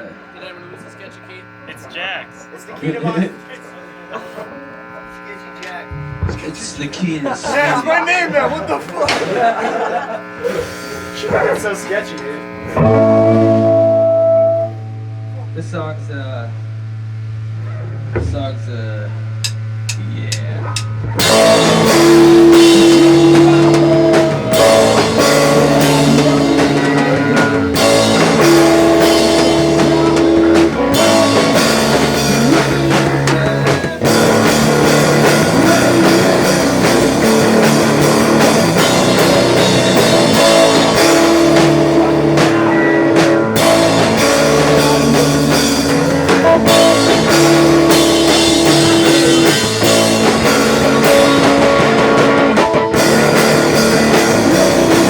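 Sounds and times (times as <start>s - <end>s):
live rock band playing: 7.6s - 11.7s, 12.6s - 15.6s, 19.3s - 55.0s.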